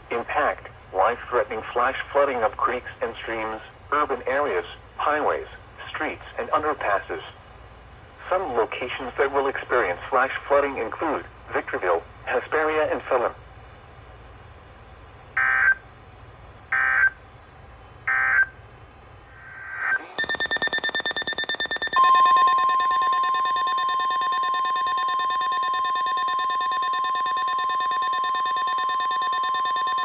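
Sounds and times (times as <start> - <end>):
digital data tone bursts: 20.2 - 30.0
fast pulsing alert tones: 20.2 - 30.0
steady buzzy alert tone: 20.2 - 30.0.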